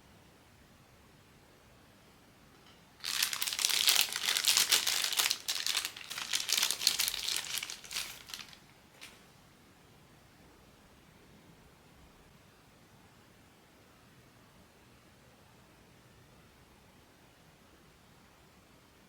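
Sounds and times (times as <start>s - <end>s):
plastic packaging crinkling: 3.0s - 9.2s.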